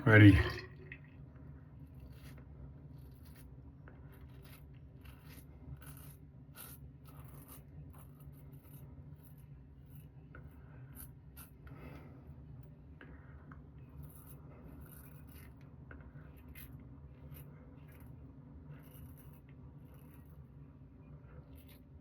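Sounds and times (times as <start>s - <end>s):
razor scraping stubble: 2.0s - 11.6s, 13.9s - 15.6s, 16.4s - 20.5s.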